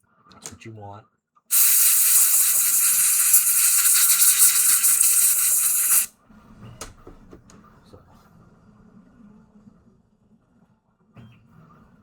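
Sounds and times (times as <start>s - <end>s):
pressurised spray hissing: 1.5s - 6.1s.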